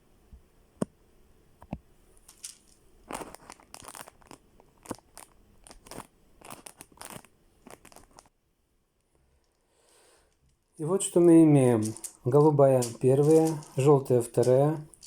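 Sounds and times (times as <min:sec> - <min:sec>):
plastic puzzle rattling and scraping: 0:02.2 - 0:08.3, 0:10.4 - 0:15.0
plastic puzzle clicks: 0:02.3 - 0:04.4, 0:11.2 - 0:15.0.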